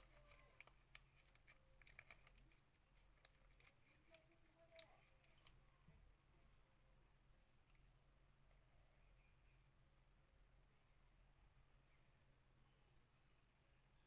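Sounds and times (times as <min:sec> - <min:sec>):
paper clicks and rustles: 0:00.0 - 0:05.6.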